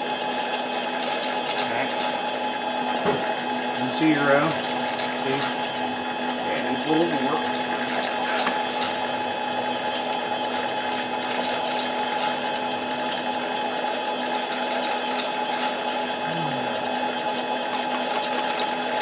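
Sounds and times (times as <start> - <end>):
lathe motor and gear whine: 0.0 - 19.0
light scratching: 0.8 - 3.0, 4.2 - 5.8, 7.0 - 9.1, 14.4 - 15.8.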